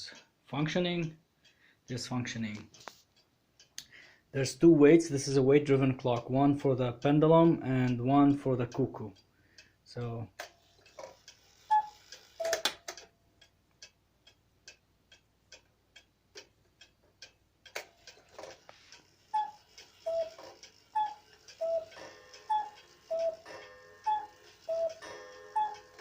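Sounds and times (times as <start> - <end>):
cuckoo clock ticking: 0.0 - 3.9, 4.6 - 26.0
two-note cuckoo calls: 11.7 - 12.7, 19.3 - 26.0.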